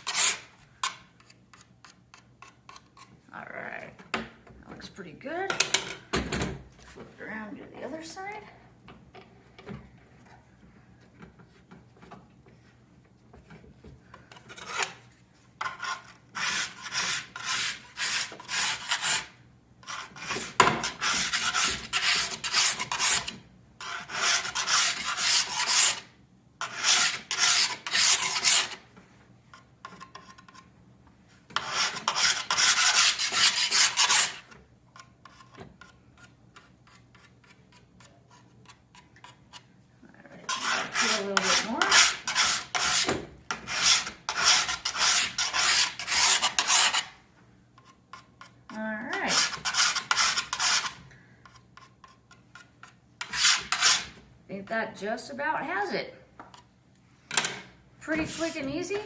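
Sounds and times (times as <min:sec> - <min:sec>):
sharpening stone scraping ski edge: 0:00.0 - 0:03.1, 0:14.4 - 0:15.0, 0:15.6 - 0:28.8, 0:31.6 - 0:39.6, 0:40.5 - 0:47.2, 0:49.2 - 0:54.2, 0:58.2 - 0:58.7.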